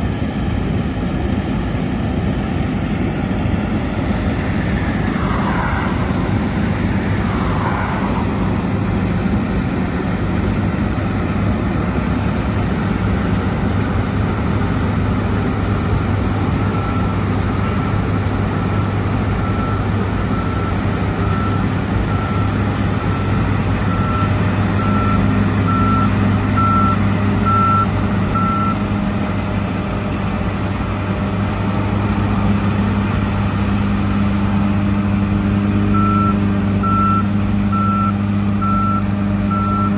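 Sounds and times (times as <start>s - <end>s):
large diesel engine running: 0.0s - 39.9s
high electronic warning beep: 23.9s - 28.8s, 36.0s - 39.9s.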